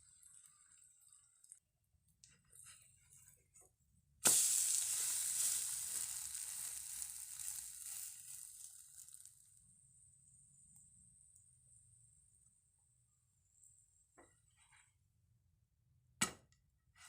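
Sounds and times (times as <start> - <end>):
food sizzling in hot oil: 0.0 - 1.5, 4.2 - 9.6.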